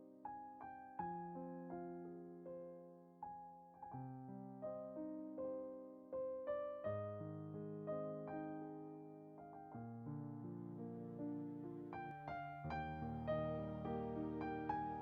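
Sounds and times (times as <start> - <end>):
slow gentle piano: 0.0 - 15.0.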